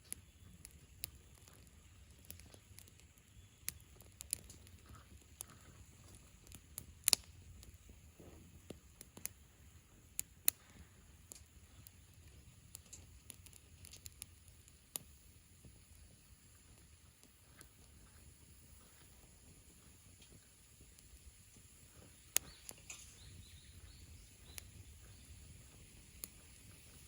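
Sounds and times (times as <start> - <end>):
campfire crackling: 0.0 - 27.0.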